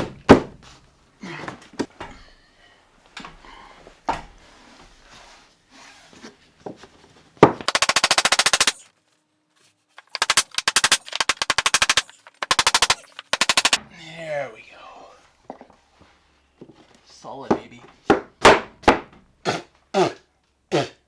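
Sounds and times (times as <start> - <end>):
power driver hammering: 7.7 - 8.9, 10.0 - 13.8.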